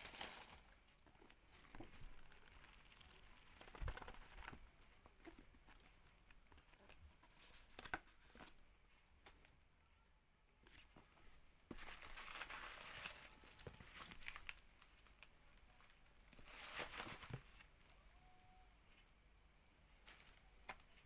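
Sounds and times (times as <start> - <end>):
packaging being torn and crinkled: 11.8 - 15.3.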